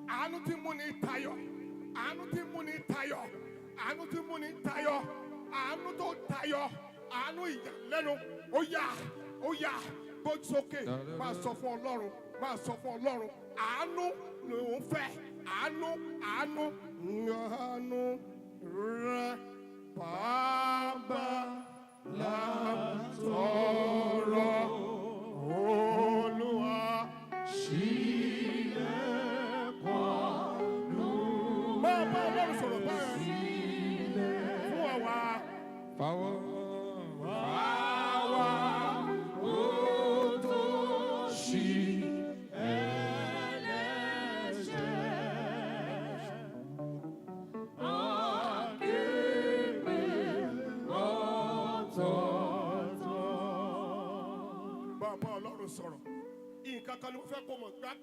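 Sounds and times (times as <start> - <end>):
person singing with vibrato: 0.0 - 46.7, 47.8 - 56.1
sustained accompaniment: 21.0 - 56.5
held instrumental chords: 22.0 - 56.6.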